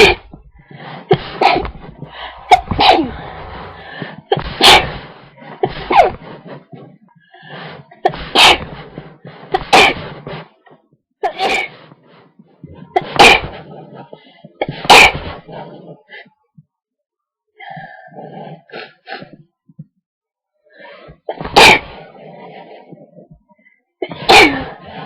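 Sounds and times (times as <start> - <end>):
person sneezing: 24.0 - 24.8.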